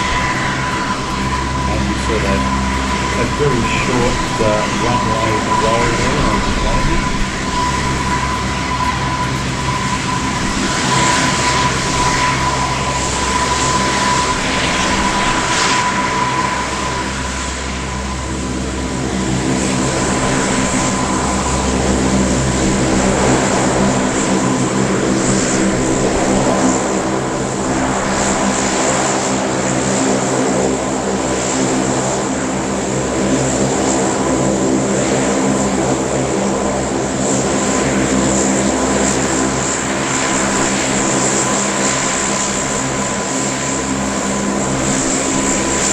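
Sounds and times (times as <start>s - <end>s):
high turbine whine: 0.0s - 45.9s
propeller drone: 0.0s - 45.9s.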